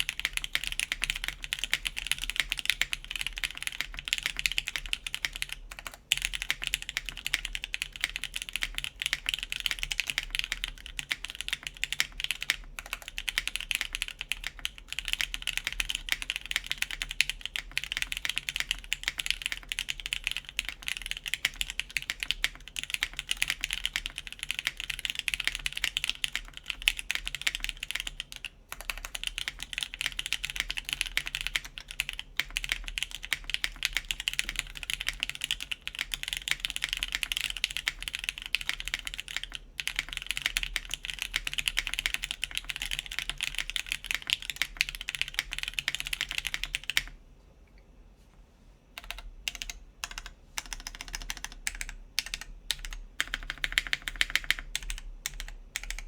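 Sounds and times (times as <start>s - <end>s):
mechanical keyboard typing: 0.0s - 47.2s, 49.0s - 56.0s.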